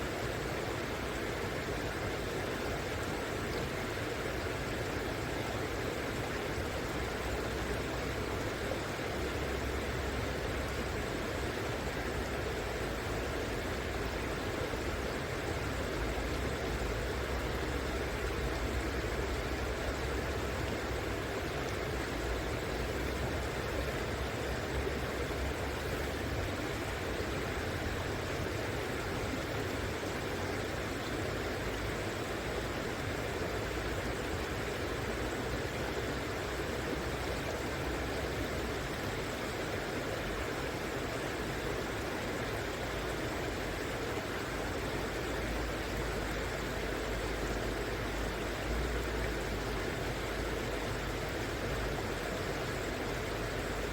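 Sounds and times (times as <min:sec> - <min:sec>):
river water rushing: 0:00.0 - 0:53.9.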